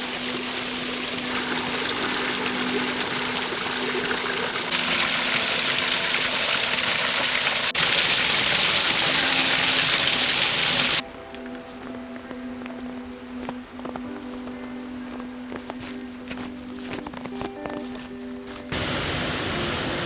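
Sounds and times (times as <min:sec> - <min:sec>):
creek water rushing: 0:00.0 - 0:11.0.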